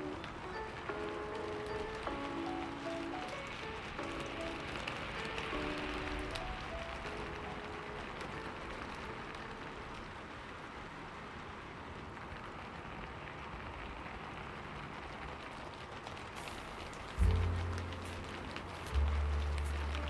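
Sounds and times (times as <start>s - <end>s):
wood fire crackling: 0.0s - 20.0s
low rumble: 16.4s - 20.0s.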